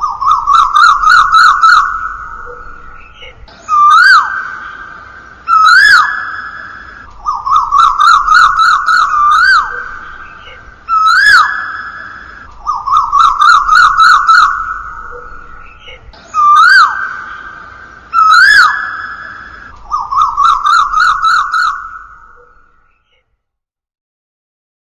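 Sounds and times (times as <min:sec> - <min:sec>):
koel bird calls with echo: 0:00.0 - 0:23.2.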